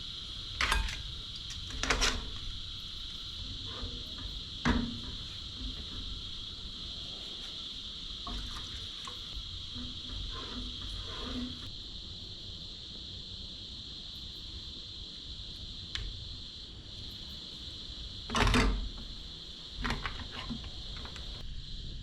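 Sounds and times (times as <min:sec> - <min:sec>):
insects chirping: 0:00.0 - 0:22.0.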